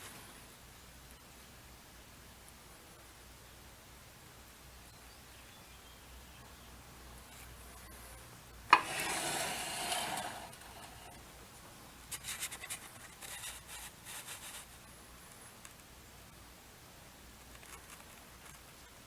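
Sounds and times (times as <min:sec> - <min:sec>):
rapid rubbing strokes: 0:08.7 - 0:11.2, 0:12.1 - 0:14.8
scraping: 0:08.7 - 0:11.2.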